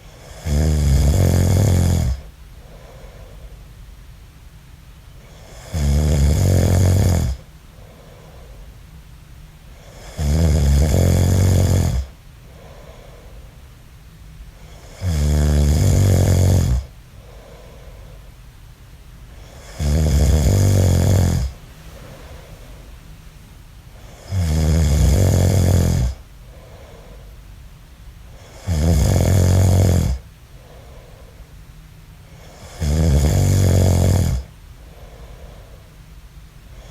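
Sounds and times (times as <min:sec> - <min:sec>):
man snoring: 0:00.1 - 0:02.3, 0:05.3 - 0:07.4, 0:09.8 - 0:13.0, 0:14.7 - 0:17.8, 0:19.4 - 0:21.6, 0:24.0 - 0:26.7, 0:28.4 - 0:30.8, 0:32.4 - 0:34.5
soft breathing: 0:02.1 - 0:03.9, 0:07.4 - 0:10.2, 0:12.0 - 0:15.0, 0:16.8 - 0:18.5, 0:20.6 - 0:24.4, 0:25.2 - 0:28.6, 0:30.2 - 0:32.8, 0:34.4 - 0:36.9.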